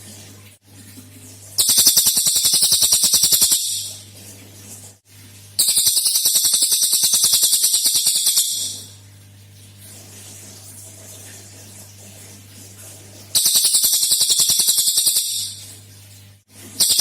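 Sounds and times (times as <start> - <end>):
bird rattling trill: 1.6 - 4.0, 5.6 - 9.0, 13.4 - 15.7, 16.8 - 17.0.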